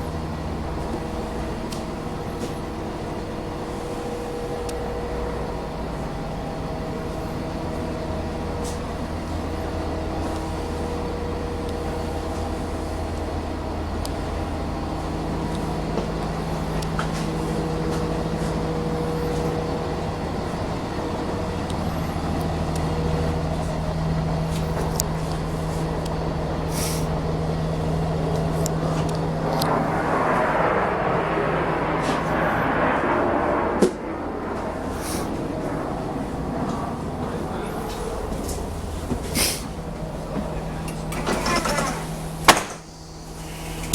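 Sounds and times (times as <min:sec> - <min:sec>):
rushing hiss: 0:28.5 - 0:39.9.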